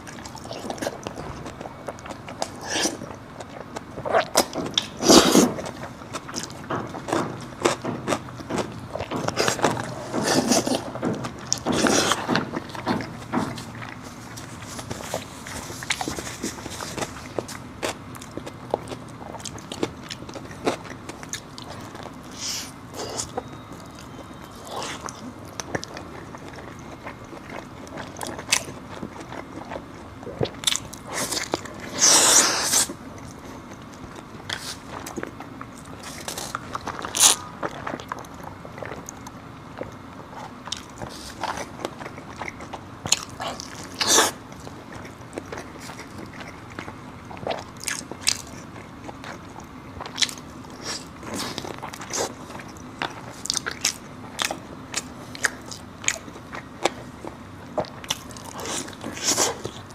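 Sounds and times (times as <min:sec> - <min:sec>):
person chewing crunchy food: 0:00.0 - 0:59.9.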